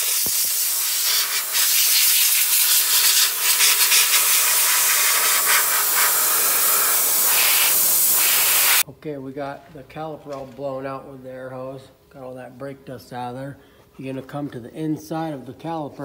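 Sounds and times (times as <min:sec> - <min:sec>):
compressed air blow gun hissing: 0:00.0 - 0:08.8.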